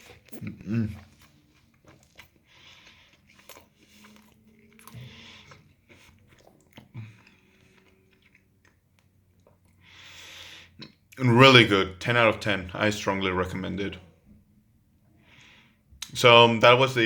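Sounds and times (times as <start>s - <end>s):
person chewing: 0.0s - 11.2s.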